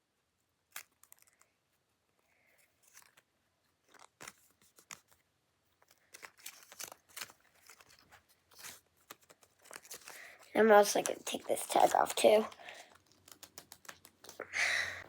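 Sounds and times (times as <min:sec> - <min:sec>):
plastic toy being handled: 0:00.5 - 0:15.0
toy packaging crinkling: 0:00.7 - 0:01.5, 0:02.8 - 0:05.2, 0:05.8 - 0:15.0.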